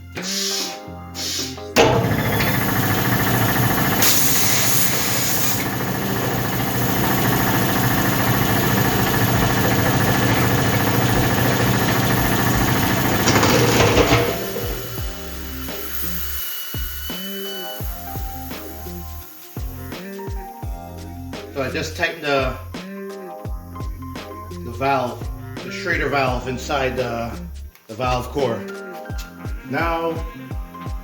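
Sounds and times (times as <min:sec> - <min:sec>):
rushing air hiss: 0:00.2 - 0:01.6, 0:02.6 - 0:11.8, 0:14.5 - 0:20.2
air compressor running: 0:01.8 - 0:20.3.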